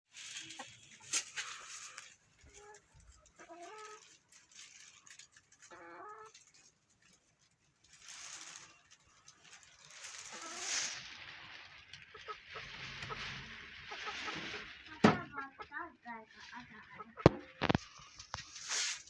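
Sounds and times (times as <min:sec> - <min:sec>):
hen clucking: 0:00.4 - 0:04.1, 0:05.6 - 0:06.4, 0:12.0 - 0:18.5.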